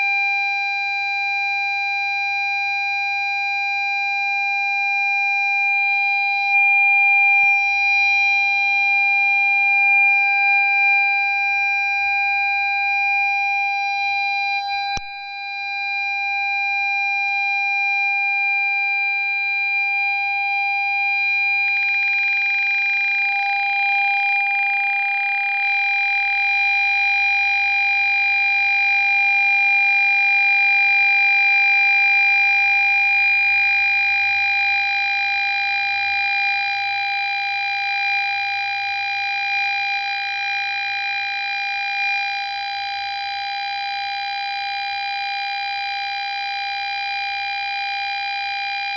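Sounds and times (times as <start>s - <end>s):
parking sensor steady tone: 4.6s - 16.1s, 28.9s - 40.0s.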